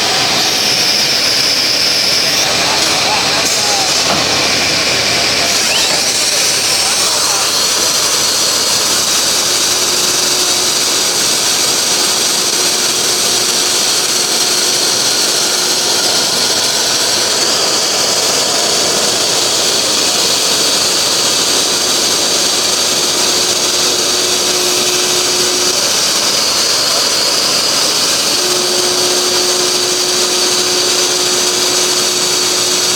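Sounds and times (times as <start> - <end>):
router spindle high-pitched whine: 0.0 - 32.9
machine mid hum: 20.6 - 32.9.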